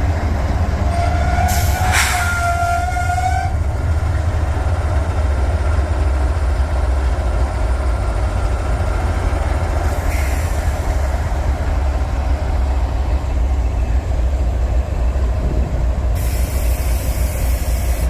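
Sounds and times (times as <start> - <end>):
train rumbling past: 0.0 - 18.0
locomotive horn: 0.9 - 3.6.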